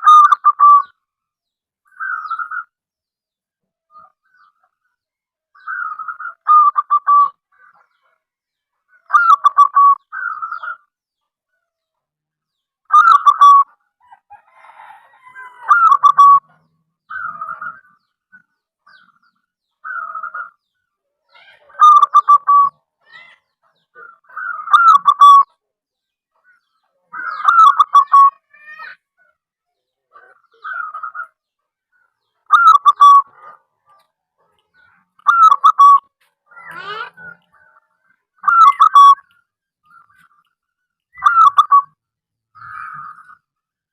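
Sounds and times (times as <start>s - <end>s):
dove cooing: 12.9s - 16.5s, 21.5s - 23.3s, 32.5s - 33.6s, 35.0s - 39.3s, 41.2s - 41.9s.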